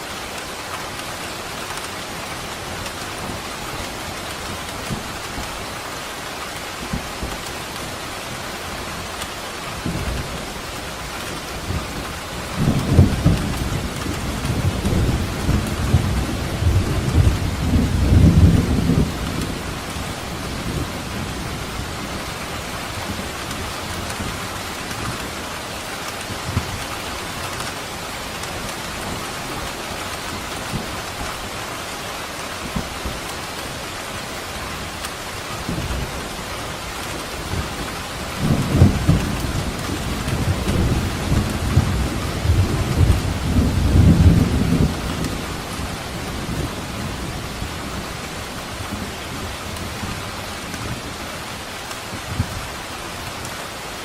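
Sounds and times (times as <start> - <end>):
steady rain: 0.0 - 54.0
thunder rumbling: 11.3 - 25.4, 37.0 - 52.6.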